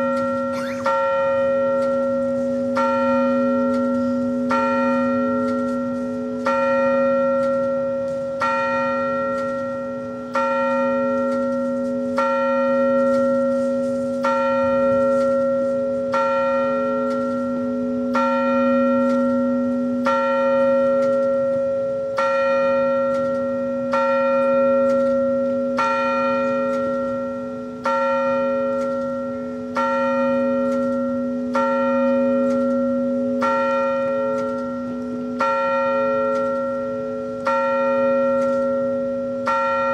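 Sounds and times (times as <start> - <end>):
bell tolling: 0.1 - 5.0.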